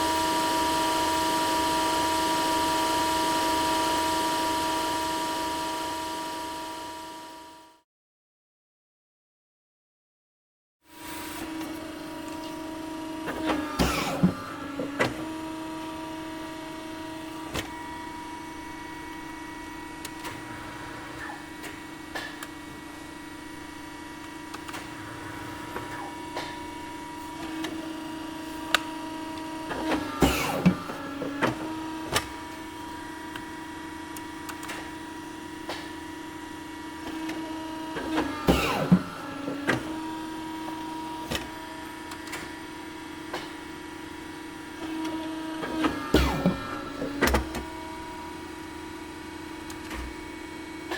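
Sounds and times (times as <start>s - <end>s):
cutting machine humming drone: 0.0s - 7.8s, 11.4s - 50.9s.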